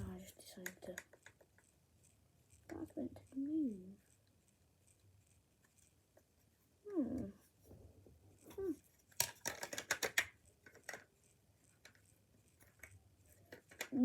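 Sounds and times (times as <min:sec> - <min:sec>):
plastic toy blaster clicks and rattles: 0:00.0 - 0:04.2, 0:08.4 - 0:14.0.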